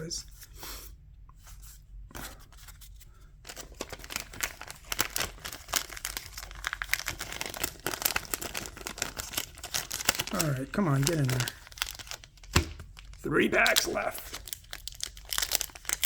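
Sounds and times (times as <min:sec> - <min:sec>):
plastic wrapper crinkling and tearing: 0:03.4 - 0:16.0.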